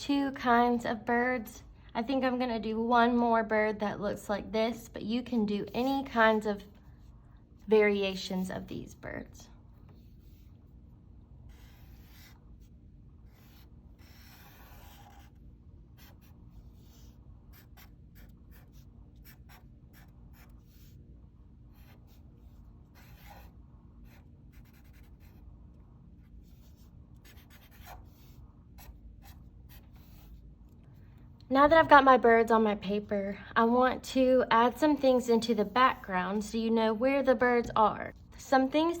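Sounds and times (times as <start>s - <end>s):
low steady hum: 0.0s - 39.0s
marker drawing on paper: 11.4s - 21.0s, 21.6s - 25.5s, 26.2s - 30.5s.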